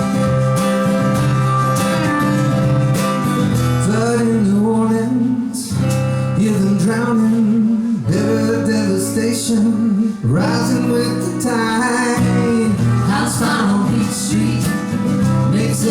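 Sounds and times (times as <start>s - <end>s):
fiddle melody: 0.0s - 3.9s, 8.1s - 15.9s
acoustic guitar chords: 0.0s - 15.9s.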